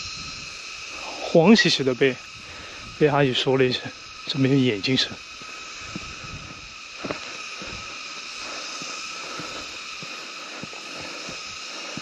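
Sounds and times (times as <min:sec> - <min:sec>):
insects droning: 0:00.0 - 0:12.0
footsteps on a path: 0:05.1 - 0:12.0.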